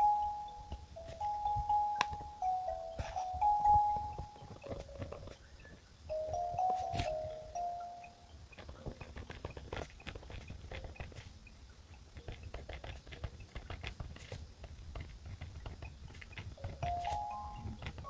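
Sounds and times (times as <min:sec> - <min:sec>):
pen writing on paper: 0:12.2 - 0:17.2.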